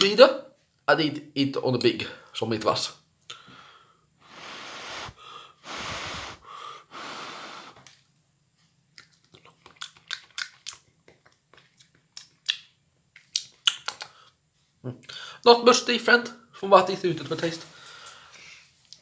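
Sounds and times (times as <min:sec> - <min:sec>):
man breathing out hard: 0:03.4 - 0:07.8
chewing clicks and smacks: 0:08.9 - 0:14.2.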